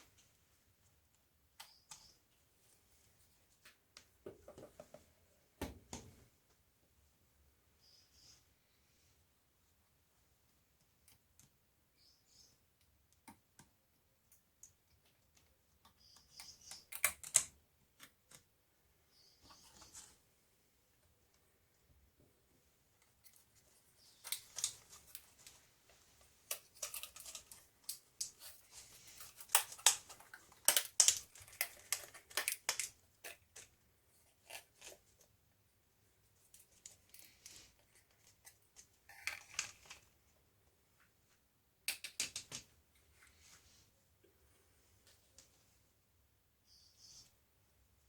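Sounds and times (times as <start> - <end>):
plastic clicks and scrapes on laptop: 24.0 - 33.8.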